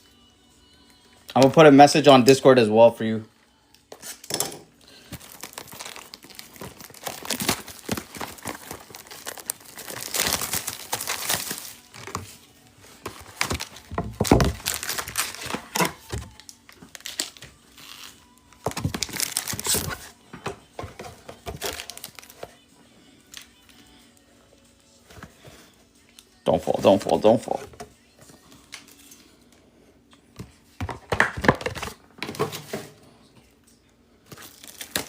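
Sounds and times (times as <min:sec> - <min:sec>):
foil wrappers crinkling: 0:04.0 - 0:20.2, 0:20.8 - 0:22.6, 0:34.2 - 0:35.0.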